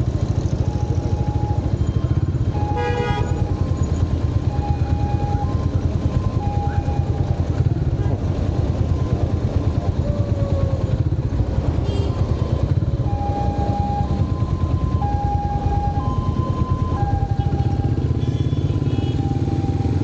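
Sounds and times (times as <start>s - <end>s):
motorcycle engine rumbling: 0.0s - 20.0s.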